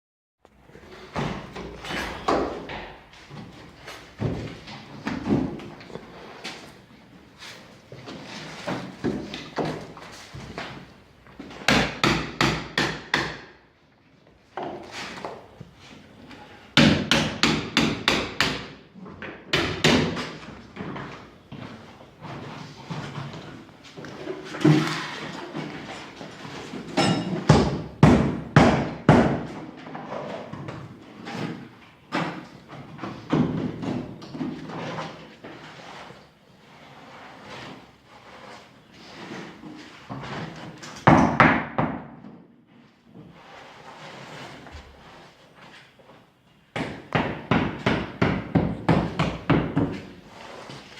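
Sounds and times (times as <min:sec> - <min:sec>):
hammer striking wooden parquet: 0:11.7 - 0:13.5, 0:16.8 - 0:18.7.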